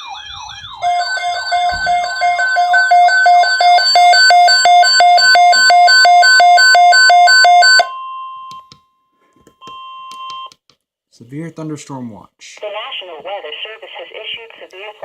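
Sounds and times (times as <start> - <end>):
steady alert tone: 0.0 - 6.0
alarm beeping low and high: 0.0 - 8.5.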